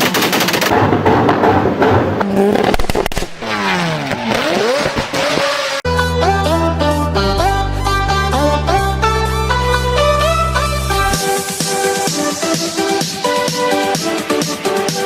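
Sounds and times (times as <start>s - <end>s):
car engine revving: 0.0s - 5.8s
car exhaust popping and crackling: 0.0s - 5.8s
music: 5.9s - 15.0s.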